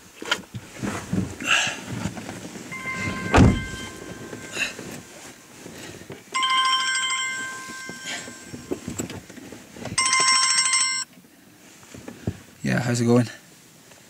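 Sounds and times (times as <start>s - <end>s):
telephone bell ringing: 2.7s - 5.2s, 6.4s - 9.0s, 10.0s - 11.1s.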